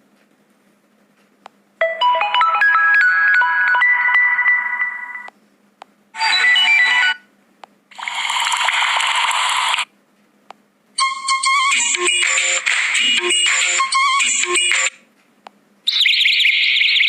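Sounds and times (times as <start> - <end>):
electronic ringtone melody: 1.8 - 5.3, 6.2 - 7.2, 11.0 - 14.9
noisy hissing sound effect: 7.9 - 9.9.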